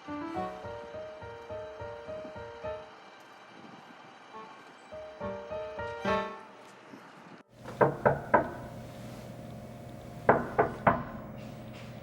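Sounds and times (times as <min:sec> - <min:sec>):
low room hum: 0:07.5 - 0:12.0
knocking on a door: 0:07.6 - 0:08.8, 0:10.3 - 0:11.2.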